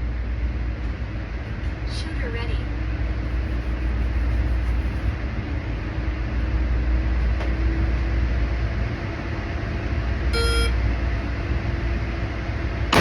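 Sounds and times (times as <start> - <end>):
low rumble: 0.0 - 13.0
short electronic beep: 10.4 - 10.8.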